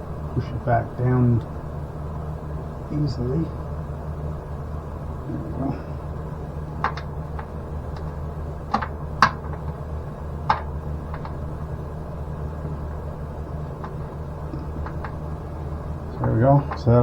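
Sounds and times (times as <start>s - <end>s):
steady low hum: 0.0s - 17.0s
metal hardware clicking and tapping: 6.8s - 9.8s, 10.5s - 11.4s, 13.8s - 15.2s, 16.1s - 16.9s.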